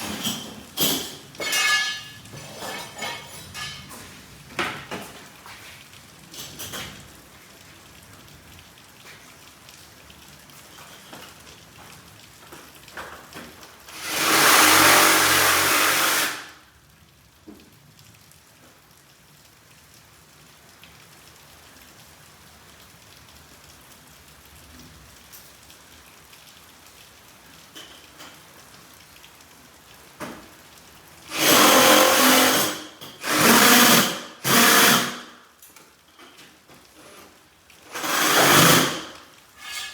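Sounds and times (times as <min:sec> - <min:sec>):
power drill driving fasteners: 0:13.9 - 0:16.5, 0:31.3 - 0:35.3, 0:37.9 - 0:39.2.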